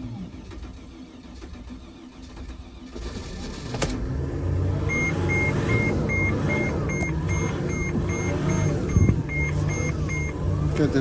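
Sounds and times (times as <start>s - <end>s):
diesel engine running: 0.0s - 11.0s
warning chime beeping: 4.8s - 10.5s.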